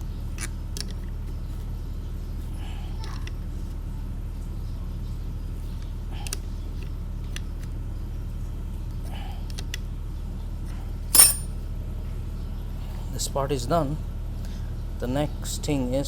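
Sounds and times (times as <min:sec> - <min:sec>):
metal tools clicking: 0:11.2 - 0:11.5.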